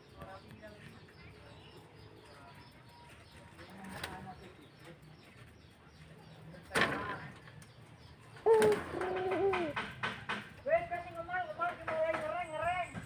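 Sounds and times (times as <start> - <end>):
dove cooing: 8.4 - 9.9.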